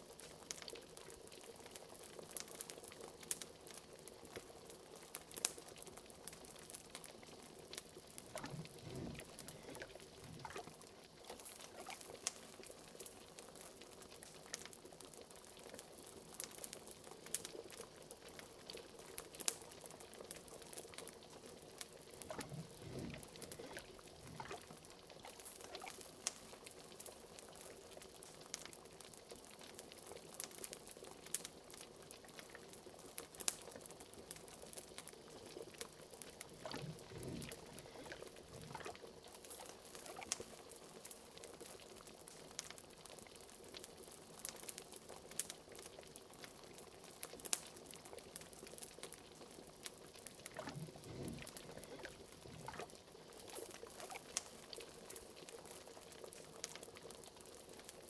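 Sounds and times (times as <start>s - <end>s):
fireplace crackling: 4.3s - 14.8s, 15.5s - 29.1s, 33.3s - 42.8s, 45.4s - 58.0s
liquid bubbling: 6.4s - 14.5s, 19.7s - 28.0s, 34.0s - 41.1s, 48.1s - 57.2s.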